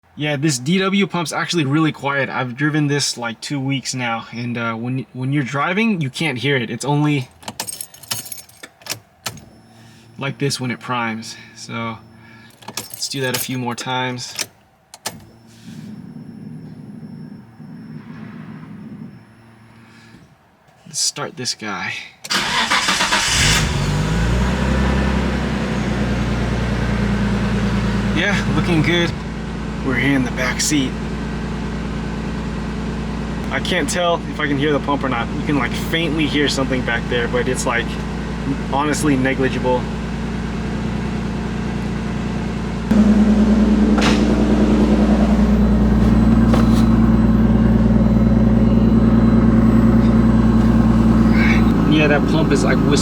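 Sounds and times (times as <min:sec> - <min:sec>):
car starter cranking: 0:07.3 - 0:10.7, 0:12.0 - 0:19.8, 0:22.2 - 0:29.2, 0:35.5 - 0:53.0
car engine idling: 0:07.3 - 0:20.3, 0:22.3 - 0:53.0
steady low hum: 0:15.3 - 0:20.5, 0:42.8 - 0:53.0.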